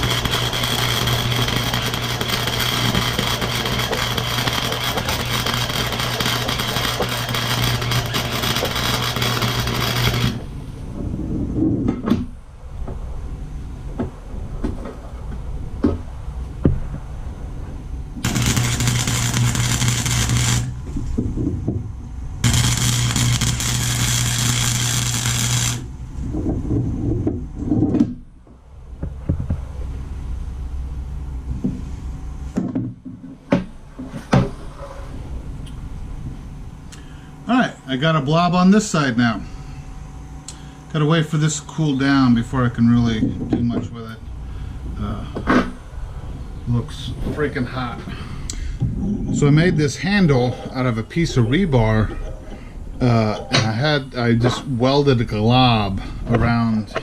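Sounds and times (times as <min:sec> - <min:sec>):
arc welder crackling hiss: 0:00.0 - 0:10.5, 0:18.2 - 0:20.8, 0:22.4 - 0:25.9.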